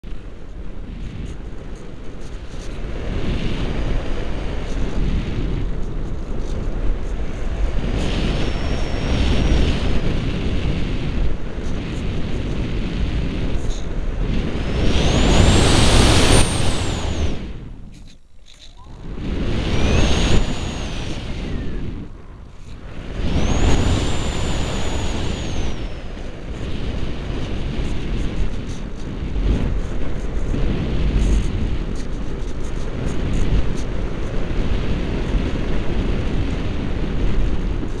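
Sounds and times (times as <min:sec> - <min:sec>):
air rushing over model glider: 0:00.0 - 0:38.0
thin rising whistle: 0:08.1 - 0:10.1, 0:14.5 - 0:26.5.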